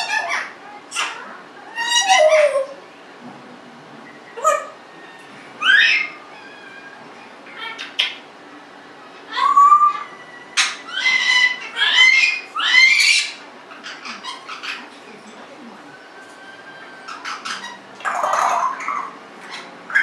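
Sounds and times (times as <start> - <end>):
parrot calling: 0.0 - 2.9, 4.2 - 8.3, 9.3 - 15.3, 15.9 - 20.0.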